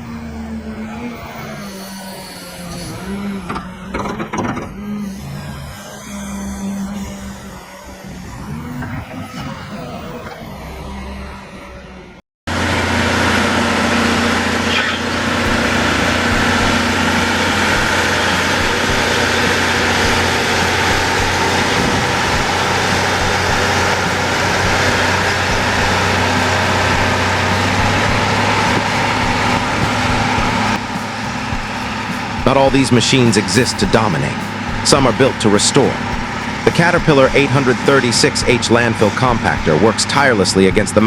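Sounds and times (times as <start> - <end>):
heavy diesel engine running: 12.5 - 41.0.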